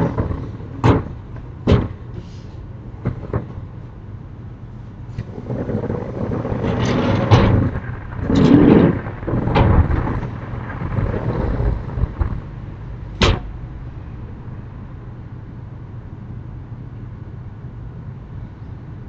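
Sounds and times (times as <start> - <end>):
knocks and thuds: 0.0 - 2.0, 3.0 - 3.6, 5.2 - 12.5, 13.2 - 13.5
steady low hum: 0.0 - 19.0.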